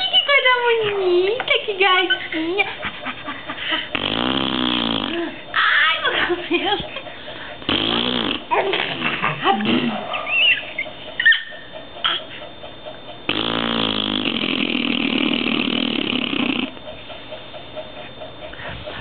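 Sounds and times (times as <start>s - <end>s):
person making mouth noises: 7.7s - 10.1s.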